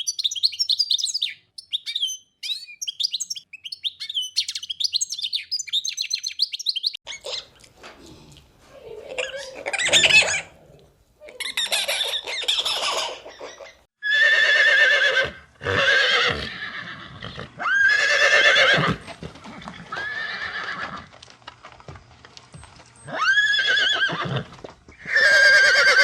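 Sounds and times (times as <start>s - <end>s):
animal high quavering cries: 9.0s - 10.6s, 11.2s - 19.0s.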